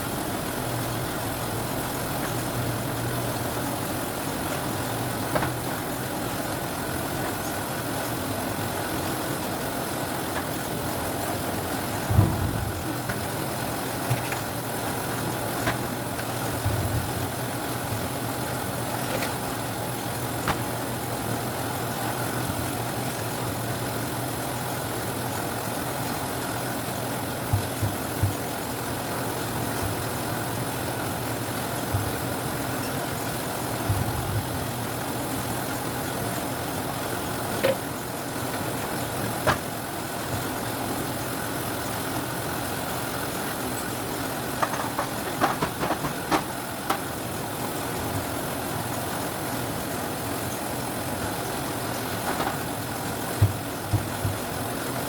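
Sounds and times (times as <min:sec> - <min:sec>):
sorting machine humming: 0:00.0 - 0:55.0
sharp knocks: 0:53.4 - 0:54.4.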